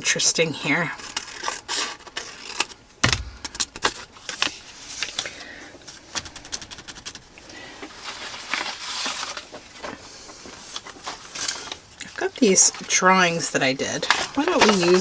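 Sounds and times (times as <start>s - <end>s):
knock on work table: 3.0s - 3.6s
paper rustling: 13.9s - 15.0s.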